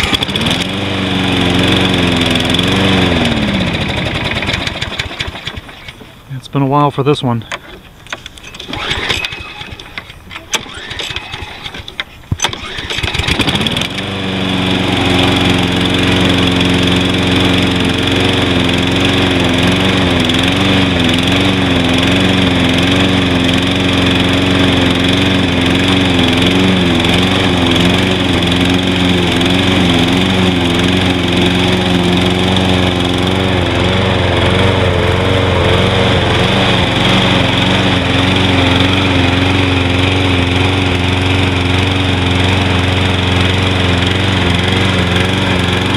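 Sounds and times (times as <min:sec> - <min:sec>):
lawn mower engine starting and running: 0:00.0 - 0:45.9.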